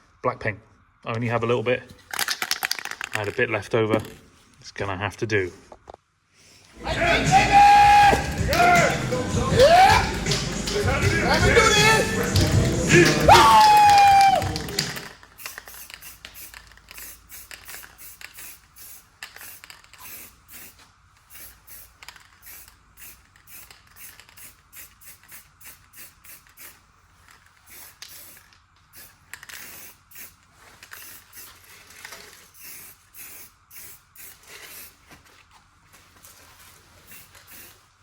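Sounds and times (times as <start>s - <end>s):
spray can hissing bursts: 7.6s - 35.1s, 37.0s - 38.0s.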